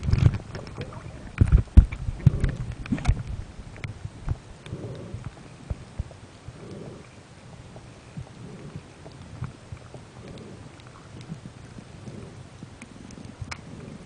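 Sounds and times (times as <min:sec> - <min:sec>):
muffled swishing: 0:00.7 - 0:03.5.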